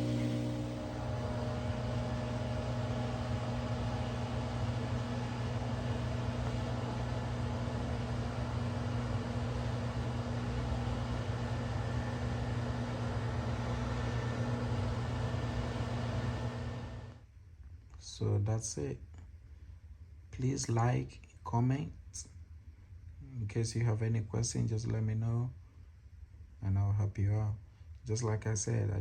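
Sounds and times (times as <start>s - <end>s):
washing machine motor hum: 0.0s - 17.2s.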